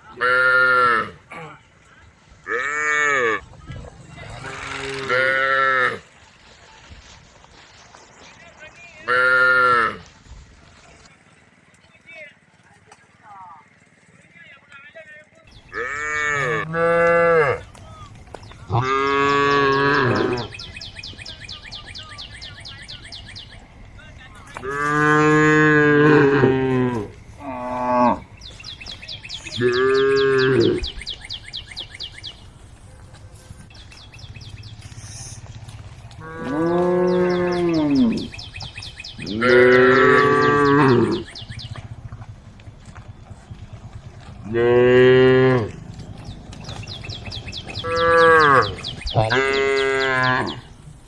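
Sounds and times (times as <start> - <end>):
cows mooing: 0.0 - 1.6, 2.4 - 3.5, 4.2 - 6.1, 9.0 - 10.1, 15.5 - 18.0, 18.6 - 20.7, 24.6 - 31.1, 34.5 - 50.8.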